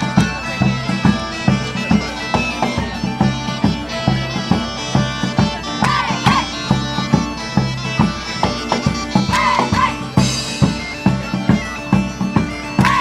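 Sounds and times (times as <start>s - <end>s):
bagpipes melody over drone: 0.0s - 13.0s
drum beat: 5.4s - 7.7s, 8.4s - 11.7s, 12.3s - 13.0s.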